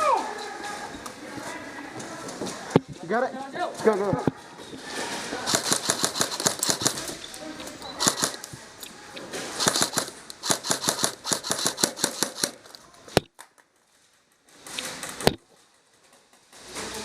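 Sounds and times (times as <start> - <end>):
airsoft guns firing: 5.4 - 7.2, 8.0 - 8.6, 9.5 - 12.7.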